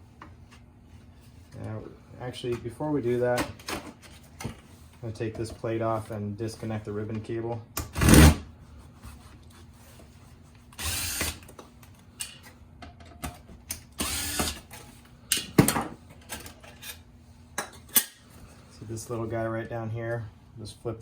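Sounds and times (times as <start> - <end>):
power screwdriver whirring: 10.8 - 11.4, 14.0 - 14.6.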